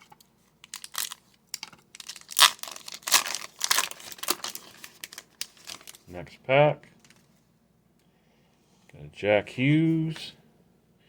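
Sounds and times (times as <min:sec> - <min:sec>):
wrapper crinkling and tearing: 0:00.0 - 0:06.1.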